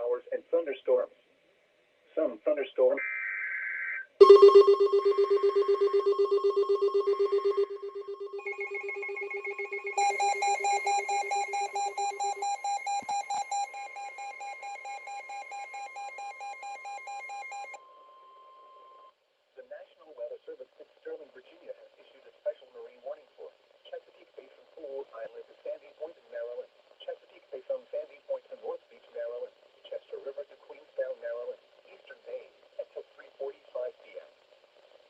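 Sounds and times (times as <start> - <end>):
pulsing electronic alarms: 4.2 - 17.8
steady warning tone: 4.2 - 17.8.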